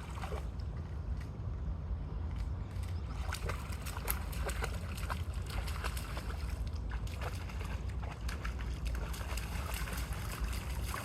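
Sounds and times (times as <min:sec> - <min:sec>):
water sloshing: 0:00.0 - 0:01.5, 0:02.2 - 0:11.0
wind rumble on microphone: 0:00.0 - 0:11.0
small clicks and splashes: 0:02.2 - 0:11.0.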